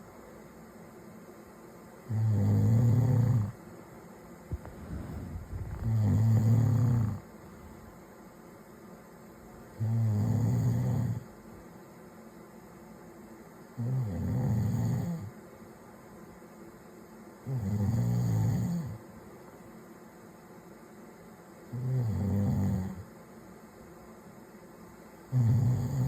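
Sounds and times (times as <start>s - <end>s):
man snoring: 2.1s - 3.6s, 4.5s - 7.9s, 9.8s - 11.2s, 13.8s - 15.3s, 17.5s - 19.0s, 21.7s - 23.0s, 25.3s - 26.0s
quiet breathing: 4.4s - 8.1s.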